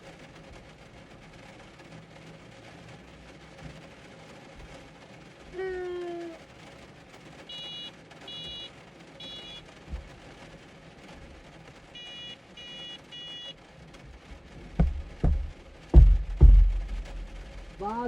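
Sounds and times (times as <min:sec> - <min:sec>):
small horn beeping: 0:07.5 - 0:09.6, 0:12.0 - 0:13.5
loud thumps: 0:14.6 - 0:17.8.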